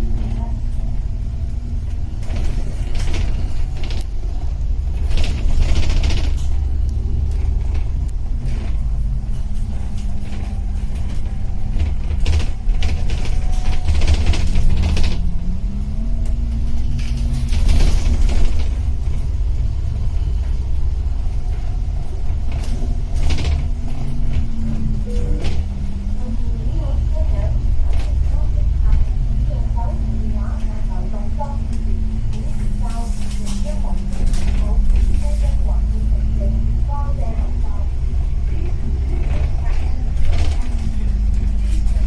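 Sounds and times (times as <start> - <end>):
vehicle engine rumble: 0.0 - 42.0.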